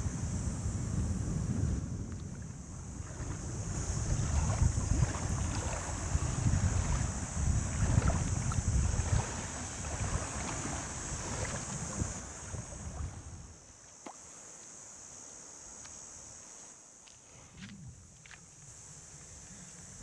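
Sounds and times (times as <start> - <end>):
wind buffeting the microphone: 0.0 - 13.6, 17.4 - 20.0
sea waves on the beach: 0.0 - 15.6
faint high hiss: 0.0 - 20.0.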